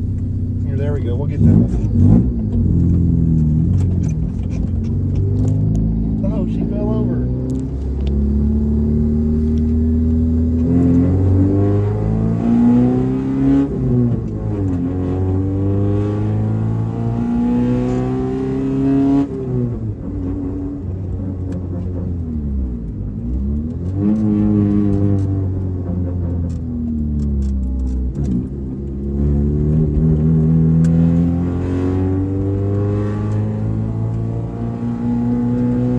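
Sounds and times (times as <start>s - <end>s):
car engine accelerating through gears: 0.0s - 35.9s.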